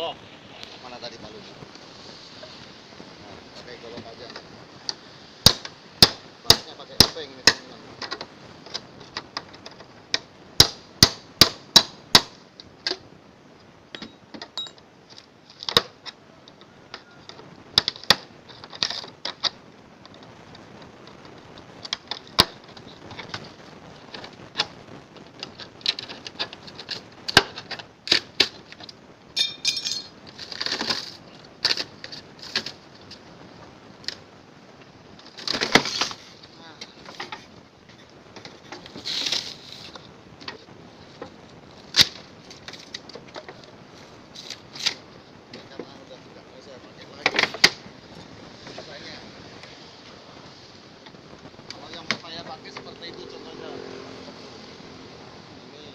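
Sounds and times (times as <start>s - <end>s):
metal clinks: 13.9s - 14.8s, 29.4s - 30.1s
metallic ringing: 14.0s - 14.8s, 29.4s - 30.1s.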